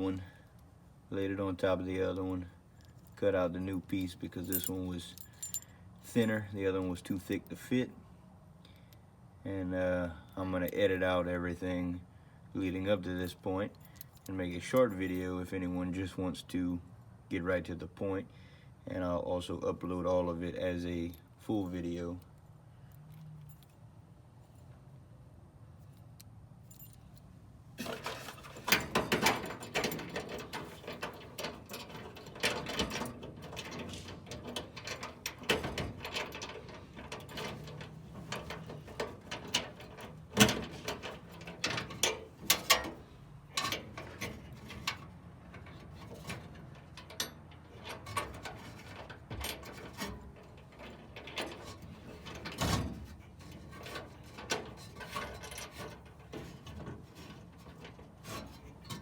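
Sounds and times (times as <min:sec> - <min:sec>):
metal lock clicking and rattling: 0:27.8 - 0:59.0.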